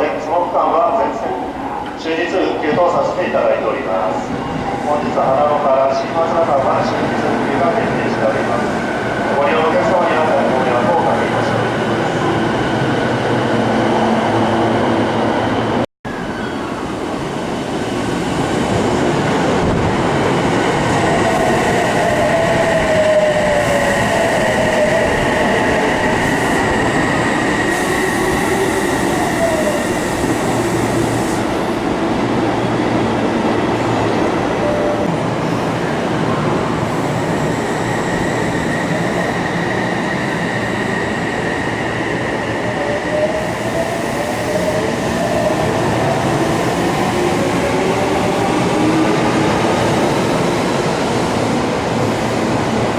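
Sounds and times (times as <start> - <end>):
train wheel squeal: 21.3 - 31.5.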